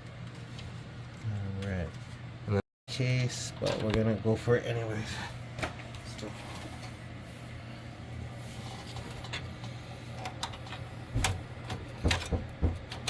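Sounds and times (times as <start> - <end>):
steady low hum: 0.0 - 13.0
knocks and clunks of computer case: 11.1 - 13.0.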